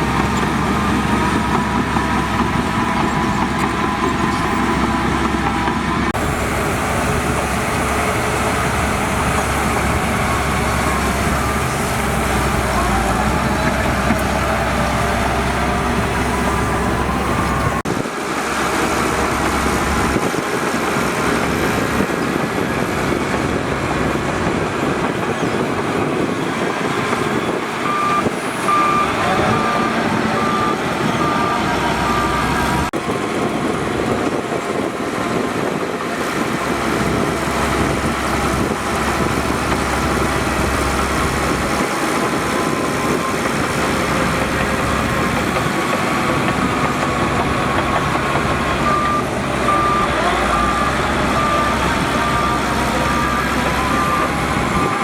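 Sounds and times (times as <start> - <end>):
diesel earthmoving machinery: 0.0 - 55.0
reversing alarm beeping: 27.3 - 32.9, 47.6 - 55.0.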